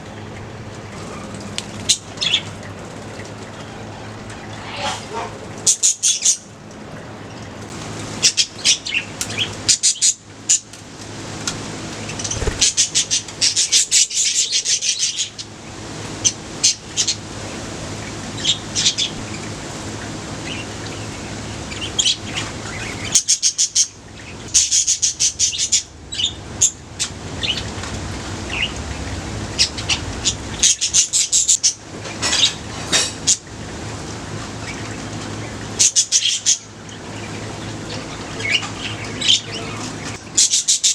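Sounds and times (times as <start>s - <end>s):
steady low hum: 0.0s - 40.9s
budgerigars chirping: 20.4s - 27.7s, 28.4s - 33.5s, 35.8s - 40.9s.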